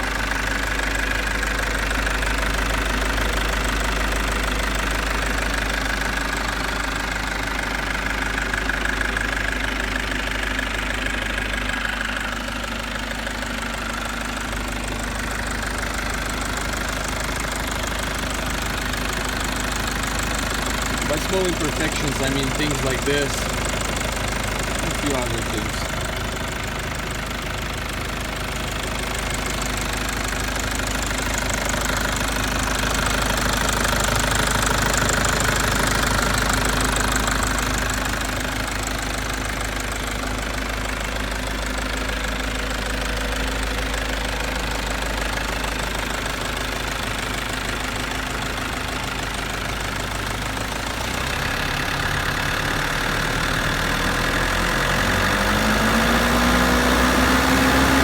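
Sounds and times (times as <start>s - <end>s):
diesel engine idling: 0.0s - 58.0s.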